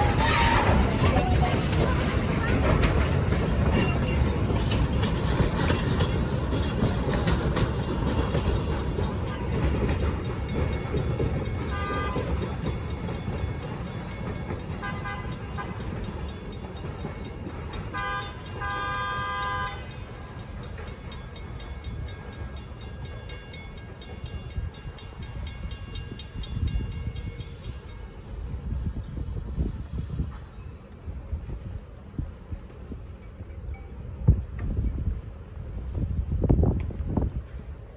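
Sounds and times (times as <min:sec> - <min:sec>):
diesel locomotive horn: 0:00.0 - 0:02.9, 0:11.6 - 0:12.5, 0:14.8 - 0:16.0, 0:17.8 - 0:20.2
train rumbling: 0:00.0 - 0:37.9.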